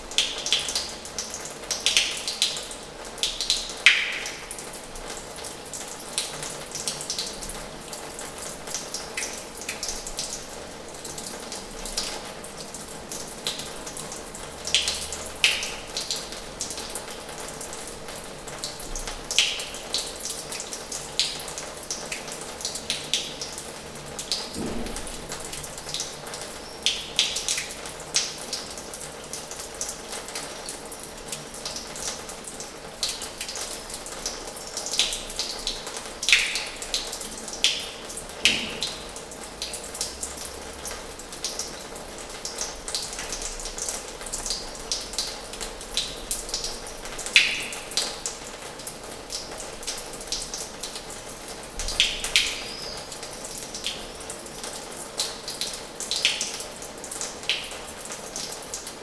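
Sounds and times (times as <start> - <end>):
sharp drips and splashes: 0.0 - 59.0.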